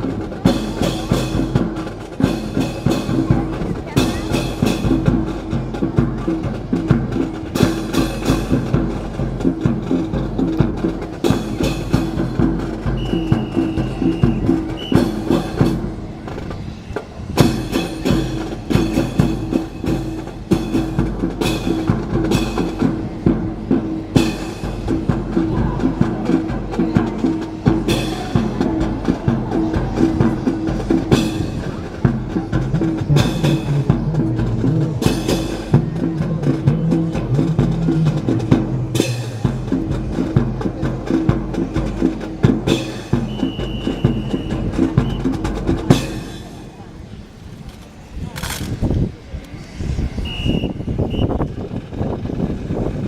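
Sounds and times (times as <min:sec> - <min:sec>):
music with steady beat: 0:00.0 - 0:46.8.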